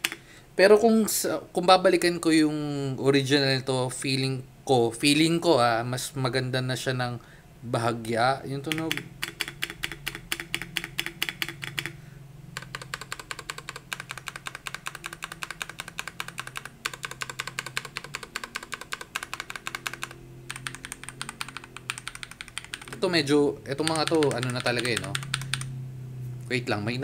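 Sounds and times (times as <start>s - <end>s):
fast typing on mechanical keyboard: 8.6s - 25.7s.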